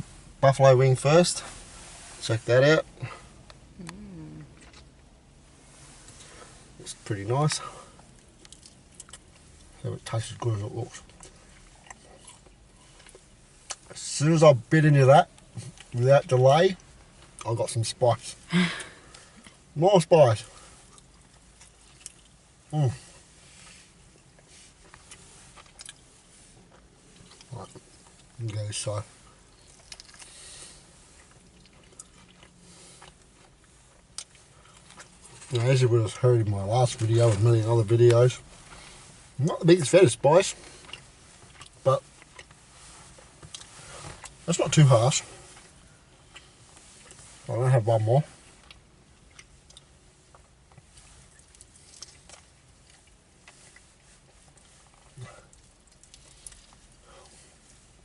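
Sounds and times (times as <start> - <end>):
person chewing food: 3.4 - 5.1, 7.9 - 9.7, 10.9 - 14.0, 20.5 - 22.4, 24.2 - 28.4, 29.5 - 35.5, 40.6 - 44.4, 45.4 - 47.2, 48.6 - 57.7.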